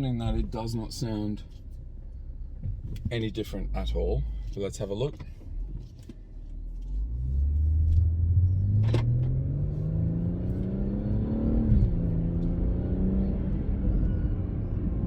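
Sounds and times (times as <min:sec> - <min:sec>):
car engine accelerating: 0:05.6 - 0:15.0.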